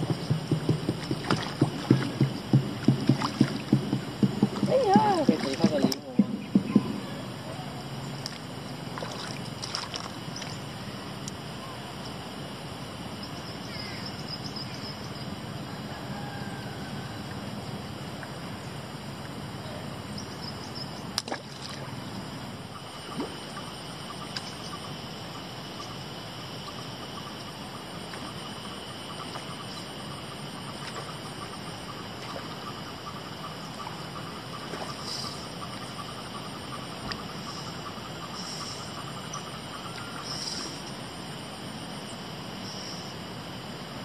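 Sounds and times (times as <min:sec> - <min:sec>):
flowing river water: 0:00.0 - 0:13.6, 0:15.3 - 0:44.0
insect drone: 0:00.0 - 0:44.0.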